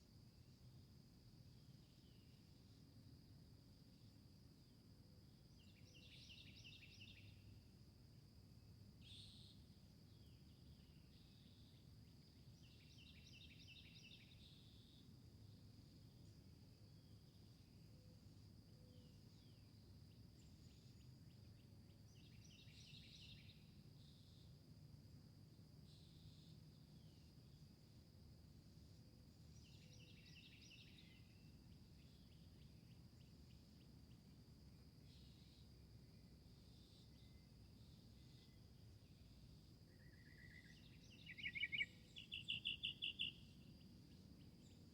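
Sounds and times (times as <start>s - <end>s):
high insect drone: 0.1s - 44.9s
songbird chirping: 5.3s - 7.7s, 8.9s - 24.5s, 28.8s - 44.9s.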